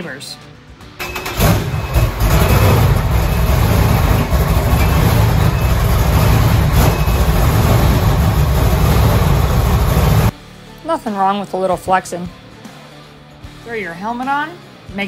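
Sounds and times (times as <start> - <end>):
powerboat engine running: 1.4 - 10.3.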